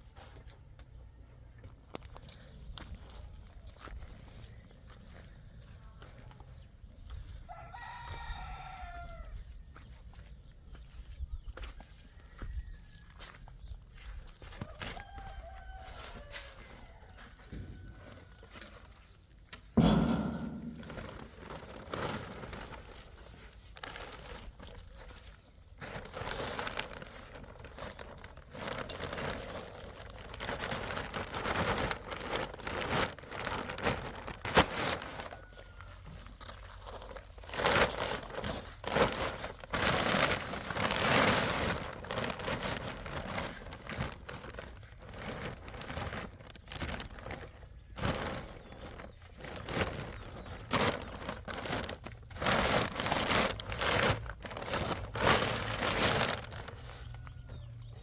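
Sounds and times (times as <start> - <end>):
small clicks and crunches: 1.6 - 5.2, 17.5 - 58.0
crinkling and rustling: 13.1 - 58.0.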